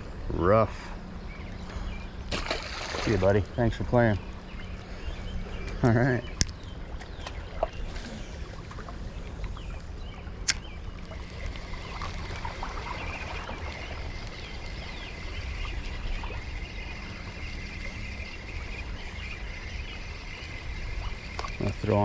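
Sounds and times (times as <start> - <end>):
sharp click: 10.4 - 10.7.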